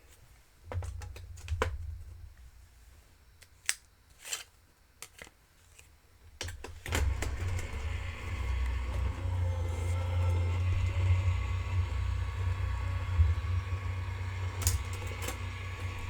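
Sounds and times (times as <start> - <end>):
die-cutting machine motor hum: 6.9 - 16.0.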